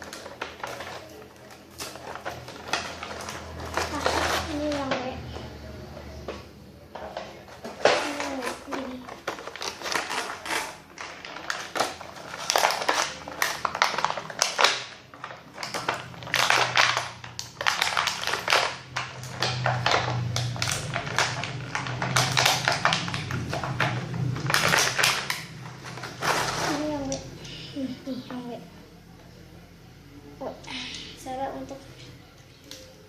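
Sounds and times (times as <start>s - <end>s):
packaging rustling and crinkling: 0.0s - 5.2s, 7.0s - 27.3s.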